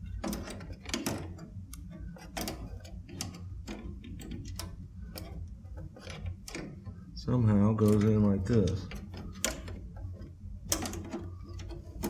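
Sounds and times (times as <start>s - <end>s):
faint low hum: 0.0s - 12.0s
small metal parts clicking: 7.8s - 12.0s.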